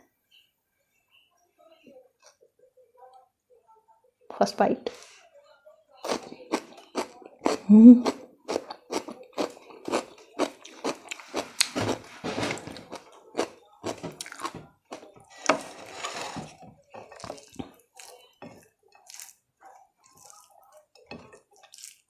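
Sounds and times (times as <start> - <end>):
chewing crunches: 6.0 - 19.4, 20.0 - 22.0.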